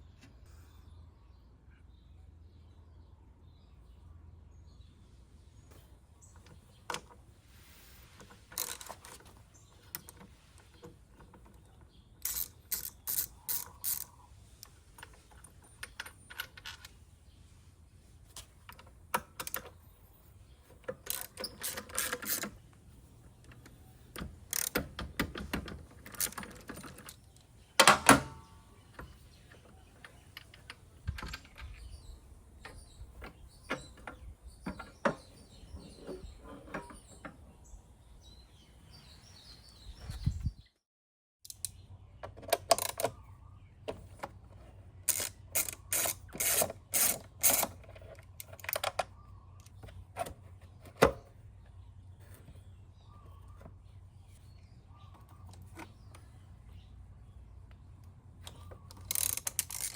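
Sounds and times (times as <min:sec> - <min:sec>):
ratchet clicking: 0:12.2 - 0:14.7, 0:24.5 - 0:25.0, 0:45.1 - 0:47.8, 0:58.9 - 0:59.9
metal tools clicking and knocking: 0:12.2 - 0:16.9, 0:45.1 - 0:49.9.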